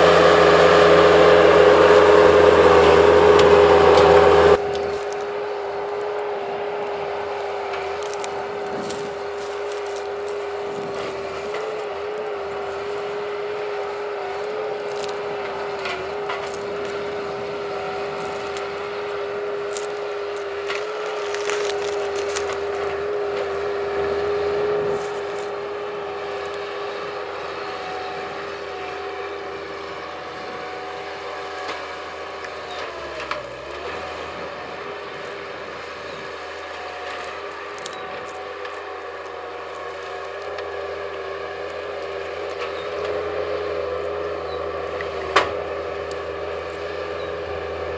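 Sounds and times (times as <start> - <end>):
skid loader engine running: 0.0 - 47.9
splintering wood cracks: 3.4 - 6.1, 7.6 - 13.4, 14.3 - 17.2, 17.9 - 23.7, 31.5 - 34.4, 35.2 - 47.0.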